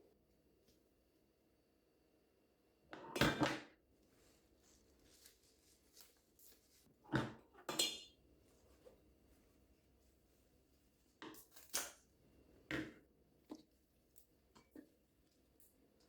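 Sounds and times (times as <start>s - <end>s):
dishes and utensils clinking: 7.7s - 8.2s.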